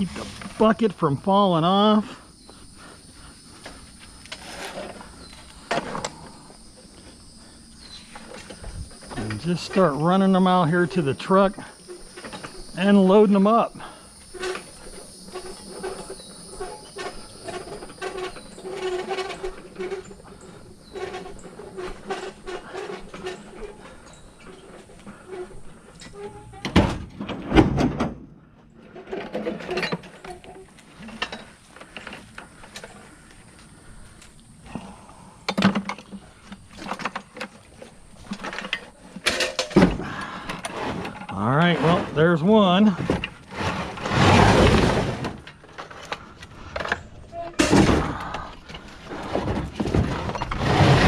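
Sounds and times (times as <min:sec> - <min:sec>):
dolly wheels squealing: 0:00.0 - 0:26.7, 0:40.6 - 0:46.3
small metal rattles: 0:07.4 - 0:26.7.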